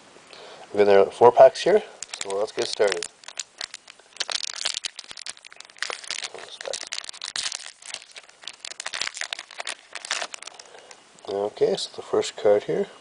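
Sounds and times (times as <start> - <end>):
wrapper being torn and crinkled: 2.0 - 11.0.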